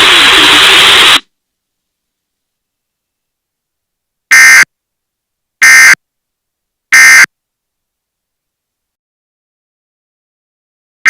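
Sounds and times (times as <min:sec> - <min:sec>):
harsh buzzy data tone bursts: 0:00.0 - 0:01.2, 0:04.3 - 0:04.7, 0:05.6 - 0:06.0, 0:07.0 - 0:07.3.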